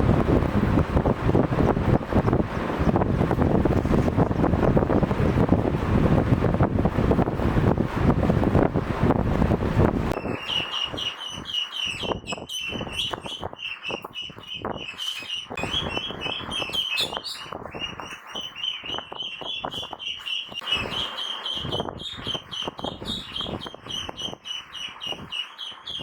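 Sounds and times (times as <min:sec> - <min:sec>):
ducklings peeping: 0:10.2 - 0:26.0.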